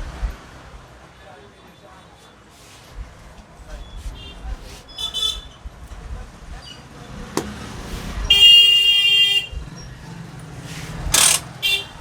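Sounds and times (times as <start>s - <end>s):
low street rumble: 0.0s - 12.0s
vehicle horn honk: 8.3s - 9.5s, 11.2s - 12.0s
sharp click: 11.1s - 11.5s.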